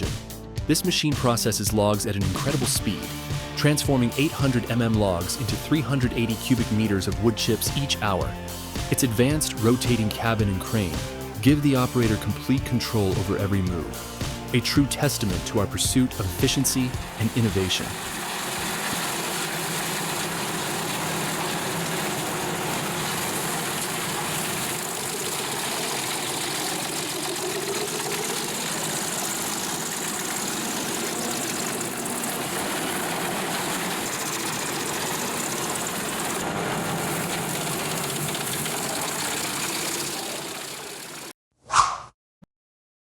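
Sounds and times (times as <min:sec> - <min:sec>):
wood chipper diesel engine: 0:14.5 - 0:41.3.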